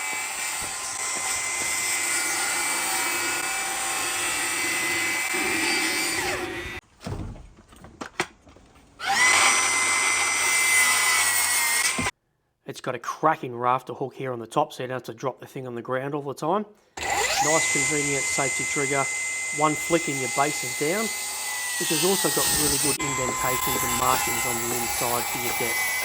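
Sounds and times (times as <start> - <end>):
circular saw whining: 0.0 - 6.8, 9.0 - 12.1, 17.0 - 26.0.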